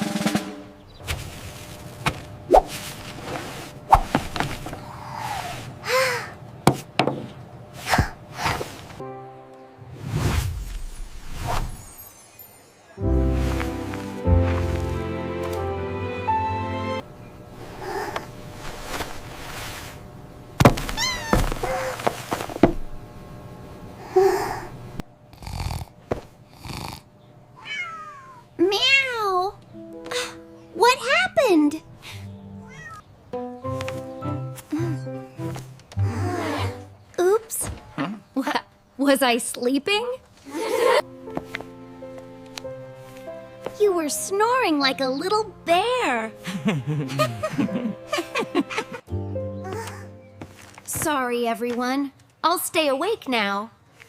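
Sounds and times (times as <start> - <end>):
cartoon swishes: 2.5 - 2.8, 9.9 - 12.0
cartoon kitten snoring: 25.3 - 25.9, 26.5 - 27.1.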